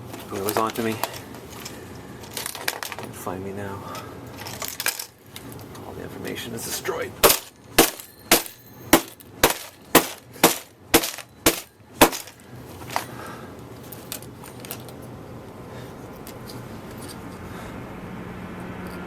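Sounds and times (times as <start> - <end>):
sharp bangs: 7.2 - 12.4.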